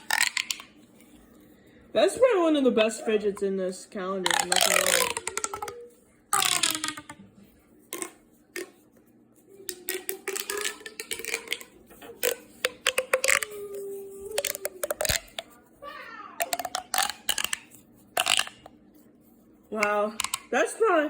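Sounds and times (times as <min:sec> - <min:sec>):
plastic toy clicking and rattling: 0:00.0 - 0:00.8, 0:04.2 - 0:07.2, 0:07.9 - 0:08.8, 0:09.5 - 0:15.6, 0:16.4 - 0:18.7, 0:19.7 - 0:21.0.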